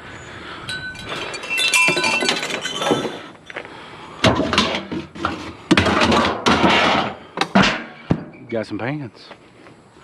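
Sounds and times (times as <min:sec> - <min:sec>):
metal pans clanking: 0:00.8 - 0:03.2, 0:04.2 - 0:08.0.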